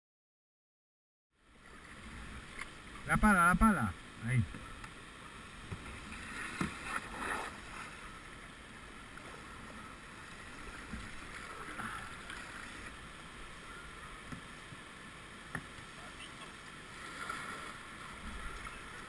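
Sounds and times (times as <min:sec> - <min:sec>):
river water rushing and splashing: 0:01.4 - 0:19.0
paddle knocks and splashes: 0:05.7 - 0:07.8.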